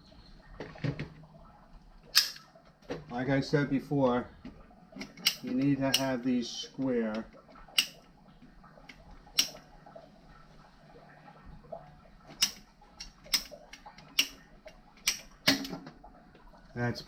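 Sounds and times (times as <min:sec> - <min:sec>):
plastic pipe fittings clicking: 0:04.4 - 0:08.1, 0:08.8 - 0:09.6, 0:12.3 - 0:16.0.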